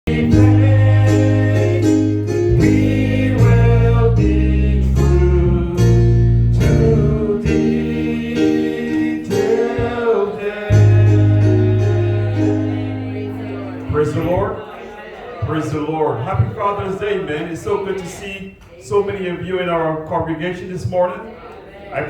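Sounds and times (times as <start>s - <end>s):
bass line: 0.0s - 14.3s
gospel singing: 0.0s - 22.0s.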